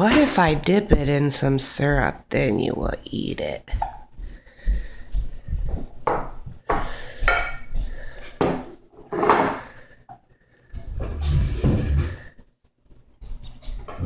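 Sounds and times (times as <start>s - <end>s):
dishes and cutlery clattering: 7.3s - 7.8s.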